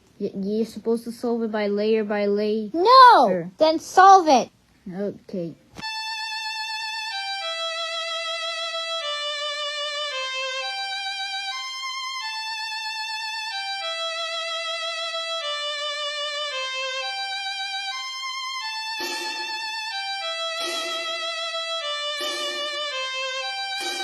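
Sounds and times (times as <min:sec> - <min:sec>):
solo violin melody: 0:05.8 - 0:11.6, 0:12.2 - 0:24.0.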